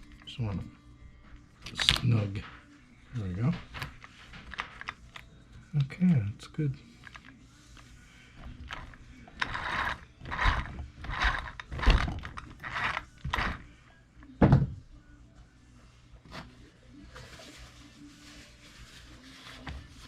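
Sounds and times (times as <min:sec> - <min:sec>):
plastic parts scraping: 0:03.7 - 0:05.2, 0:08.4 - 0:13.7
thump on workbench: 0:14.4 - 0:14.8.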